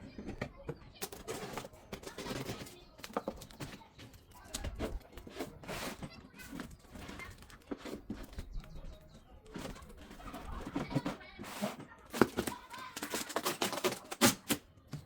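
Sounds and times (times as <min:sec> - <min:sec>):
packaging tearing and rustling: 0:09.6 - 0:14.7.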